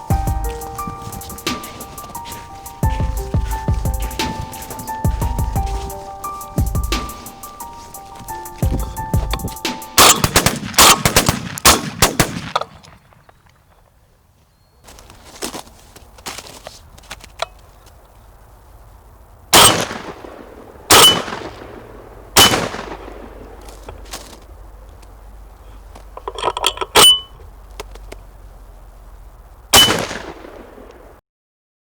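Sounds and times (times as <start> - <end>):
loud shotgun shots: 9.6 - 13.3, 19.5 - 24.3, 29.7 - 31.2
metallic clicks and clack: 26.1 - 28.0.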